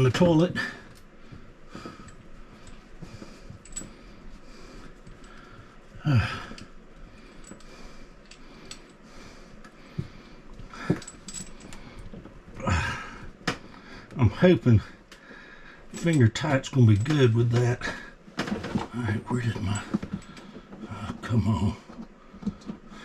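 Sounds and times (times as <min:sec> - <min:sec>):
person breathing or grunting: 0:06.0 - 0:06.7, 0:12.6 - 0:13.3.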